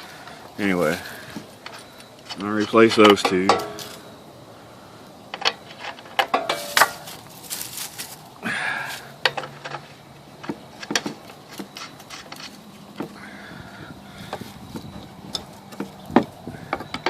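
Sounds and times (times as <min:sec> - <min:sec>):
metal fittings and tools clinking: 0:01.3 - 0:04.0, 0:05.3 - 0:07.0.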